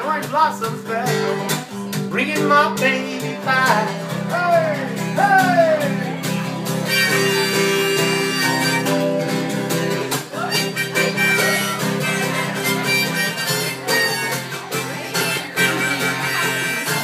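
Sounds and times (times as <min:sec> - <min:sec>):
strummed acoustic guitar: 0:00.0 - 0:17.0
harmonica playing: 0:05.0 - 0:17.0.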